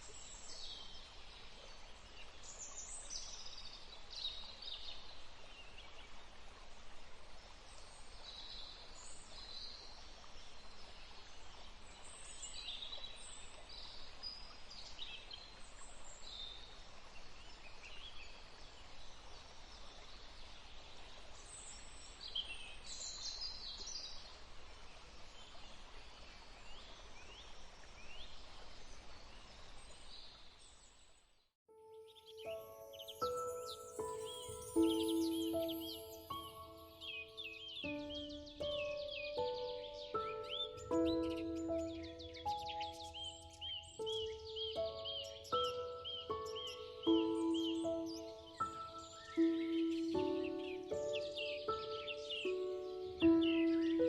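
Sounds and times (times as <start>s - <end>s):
faint forest ambience hiss: 0.0s - 54.0s
songbirds chirping and trilling: 31.9s - 54.0s.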